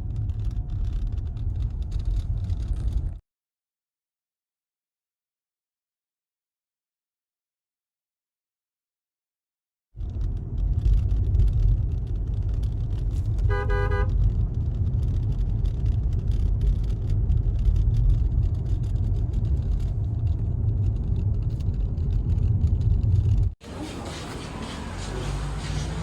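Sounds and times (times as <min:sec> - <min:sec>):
car rumbling on the move: 0:00.0 - 0:03.2, 0:10.0 - 0:26.0
car horn toot: 0:13.5 - 0:14.2.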